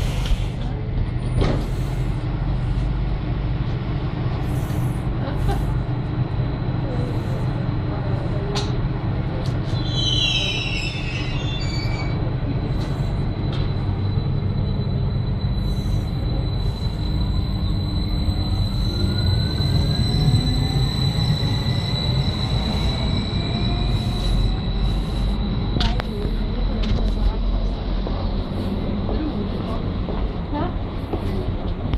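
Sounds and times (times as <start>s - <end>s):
train running gear rumble: 0.0s - 31.9s
high squeals falling in pitch: 9.8s - 12.3s
train motor whine rising in pitch: 9.8s - 27.7s.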